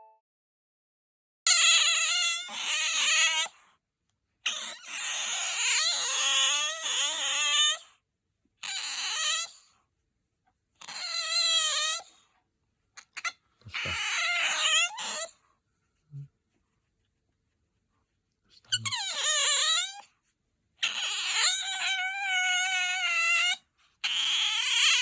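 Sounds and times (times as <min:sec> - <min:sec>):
otter squeaky high-pitched calls: 0:13.0 - 0:15.3, 0:18.7 - 0:20.0.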